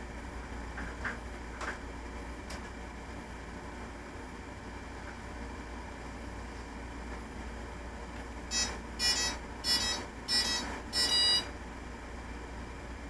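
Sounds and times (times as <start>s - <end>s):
short electronic beeps: 8.5s - 11.5s.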